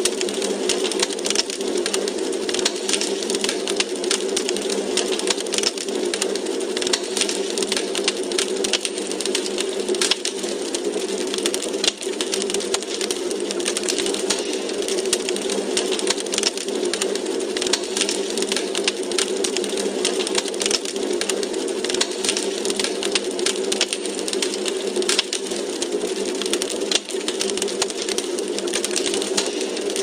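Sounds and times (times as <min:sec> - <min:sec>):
fire hissing: 0:00.0 - 0:30.0
logs crackling and popping: 0:00.0 - 0:30.0.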